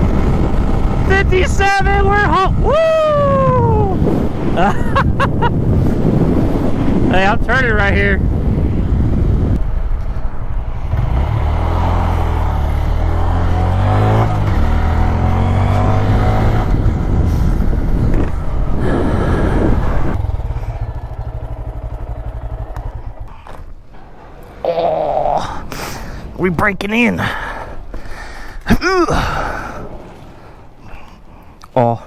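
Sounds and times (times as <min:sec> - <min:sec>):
motorcycle engine running: 0:00.0 - 0:02.4, 0:08.2 - 0:24.2.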